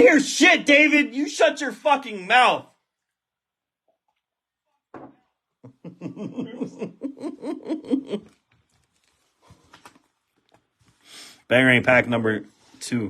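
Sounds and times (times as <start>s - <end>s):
person laughing: 5.6s - 8.4s.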